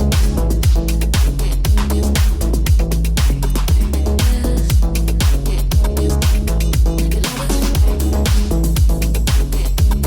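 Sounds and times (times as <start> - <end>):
electronic house music: 0.0 - 10.0.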